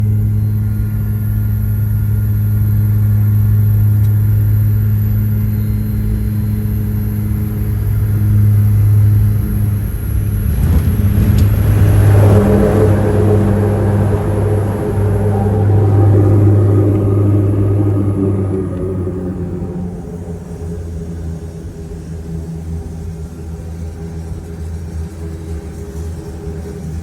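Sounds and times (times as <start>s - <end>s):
plane rolling on runway: 5.8s - 27.0s
propeller plane engines droning: 5.9s - 27.0s.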